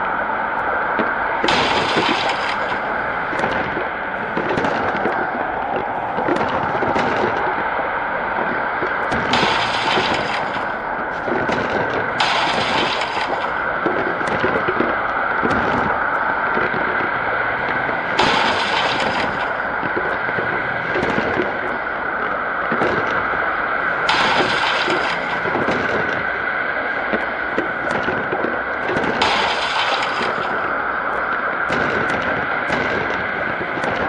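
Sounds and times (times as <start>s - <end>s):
rushing wind: 0.0s - 34.0s
sharp cracks and pops: 0.0s - 34.0s.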